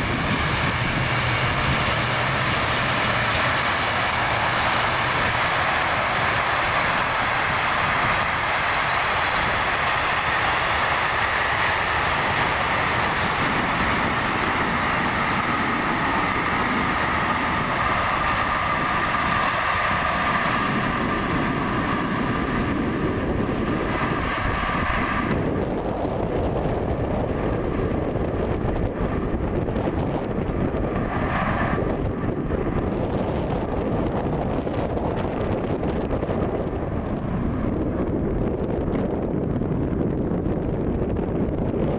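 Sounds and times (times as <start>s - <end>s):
train wheels rolling on rails: 0.0s - 41.9s.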